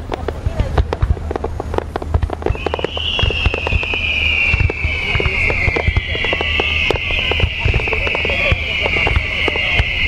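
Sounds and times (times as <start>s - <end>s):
fireworks launches and bursts: 0.0s - 10.0s
high falling whistle: 2.5s - 10.0s.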